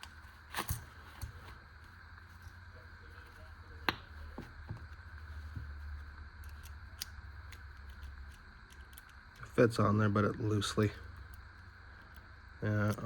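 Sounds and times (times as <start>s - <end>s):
low steady hum: 0.0s - 13.0s
small metal parts clicking: 6.4s - 9.6s.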